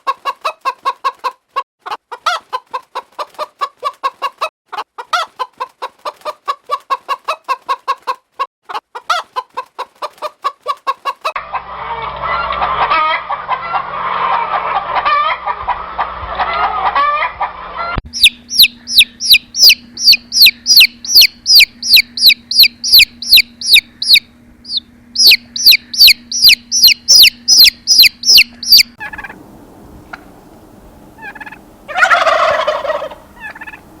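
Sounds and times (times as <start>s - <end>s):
lower bird call: 18.1s - 29.4s.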